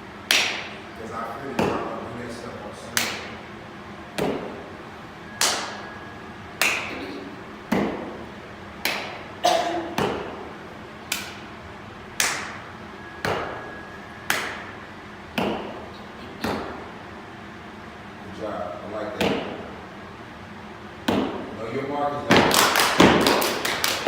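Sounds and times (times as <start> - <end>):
stomps and claps in unison: 22.3 - 24.0.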